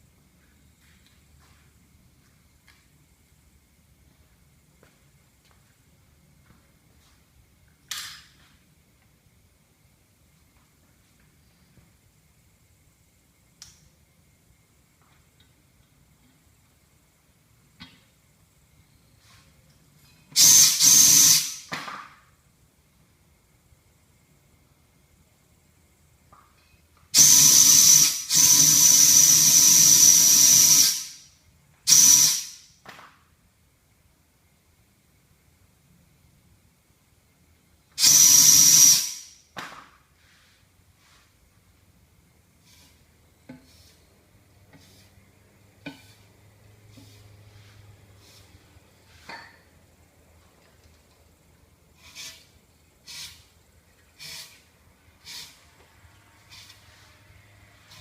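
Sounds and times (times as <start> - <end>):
gas hissing from nozzle with whistle: 20.3 - 21.7, 27.1 - 32.8, 38.0 - 39.4, 52.0 - 53.5, 55.2 - 55.6.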